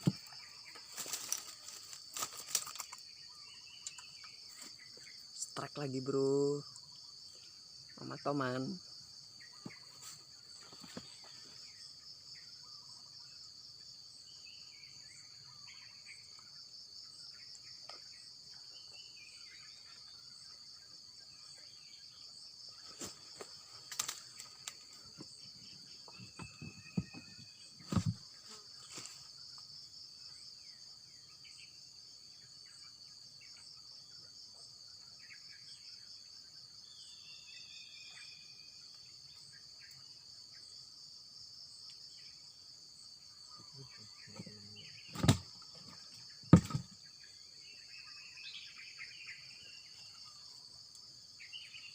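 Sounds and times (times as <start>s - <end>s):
insect chorus droning: 0.0s - 51.9s
bird chirps: 2.6s - 8.6s, 43.5s - 50.6s, 51.4s - 51.9s.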